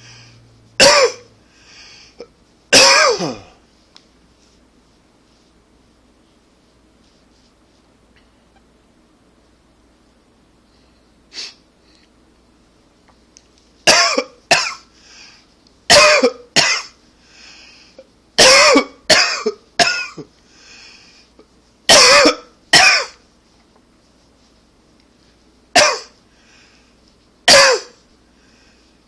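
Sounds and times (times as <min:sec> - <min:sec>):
man coughing hard: 0:00.8 - 0:01.3, 0:02.7 - 0:03.6, 0:13.9 - 0:14.9, 0:15.9 - 0:17.0, 0:18.4 - 0:20.3, 0:21.9 - 0:23.2, 0:25.8 - 0:26.2, 0:27.5 - 0:28.0
soft breath: 0:01.4 - 0:02.3, 0:14.9 - 0:15.6, 0:17.1 - 0:18.1, 0:20.4 - 0:21.5, 0:26.2 - 0:27.2, 0:28.1 - 0:29.0.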